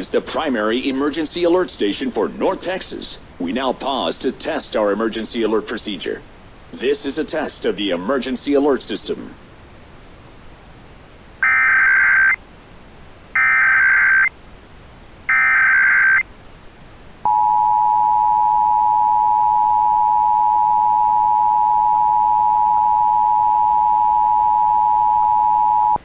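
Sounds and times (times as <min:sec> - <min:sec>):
digital data tone bursts: 0:11.4 - 0:12.4, 0:13.4 - 0:14.3, 0:15.3 - 0:16.2.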